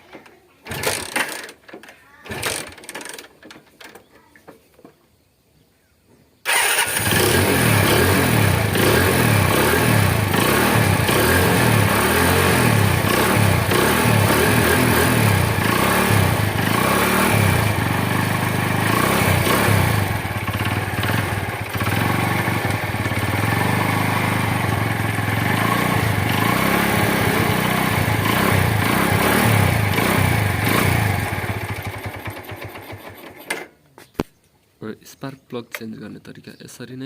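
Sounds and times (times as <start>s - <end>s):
motorcycle engine revving: 6.5s - 33.4s.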